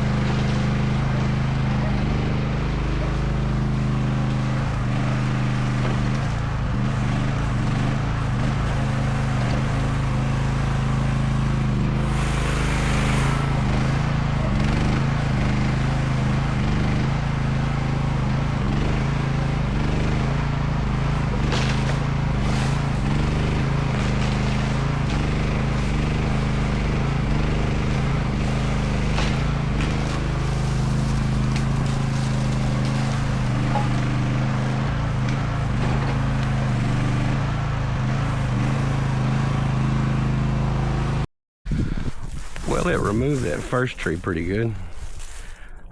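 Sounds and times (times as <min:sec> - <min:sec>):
excavator engine running: 0:00.0 - 0:45.9
knocks and scrapes: 0:03.0 - 0:16.4, 0:20.1 - 0:39.4.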